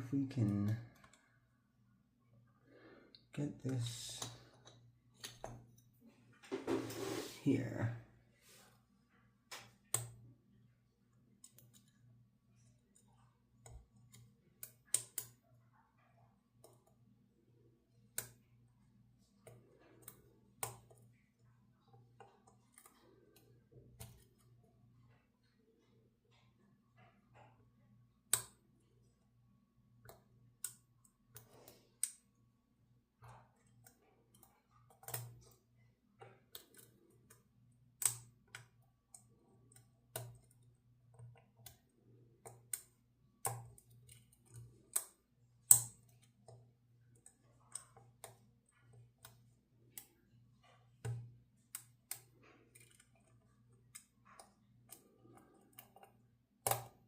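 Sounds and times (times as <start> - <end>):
lock pick clicks and taps: 9.5 - 10.2, 28.3 - 28.6, 38.0 - 50.2, 51.0 - 57.0.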